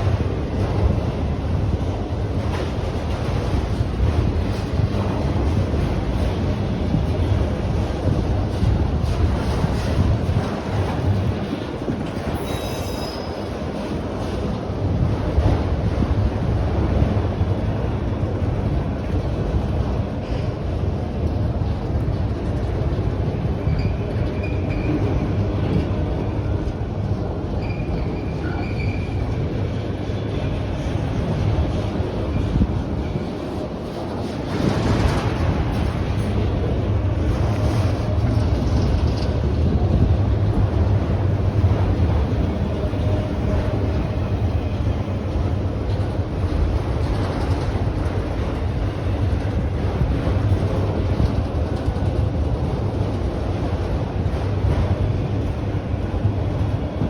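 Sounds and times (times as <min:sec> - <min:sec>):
wind buffeting microphone: 0:00.0 - 0:12.4, 0:13.4 - 0:57.0
steel wheels rumbling on rail: 0:00.0 - 0:57.0
wheel squeals: 0:12.3 - 0:13.6, 0:27.6 - 0:29.3.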